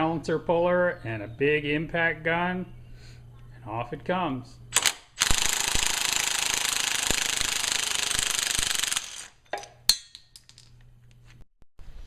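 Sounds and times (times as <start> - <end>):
impact wrench hammering: 4.8 - 10.3.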